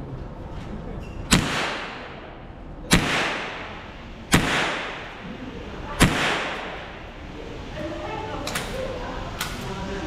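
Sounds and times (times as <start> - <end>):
echoing gunshots: 1.3 - 7.4.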